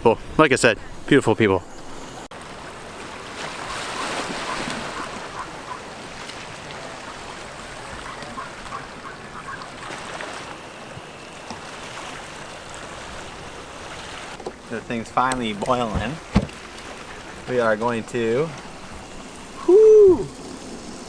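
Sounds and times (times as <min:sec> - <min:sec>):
ocean waves washing on shore: 0:00.0 - 0:21.0.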